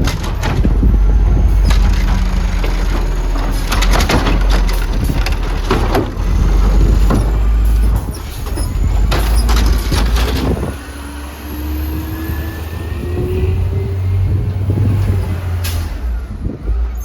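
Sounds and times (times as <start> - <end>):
loud clattering knocks: 0.0 - 11.2
garbage truck engine rising: 0.0 - 17.0
wind rumble on microphone: 0.0 - 17.0.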